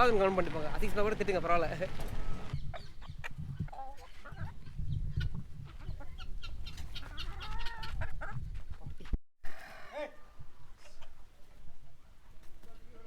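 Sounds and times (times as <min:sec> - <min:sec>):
chickens clucking: 0:00.0 - 0:09.0, 0:10.6 - 0:11.6.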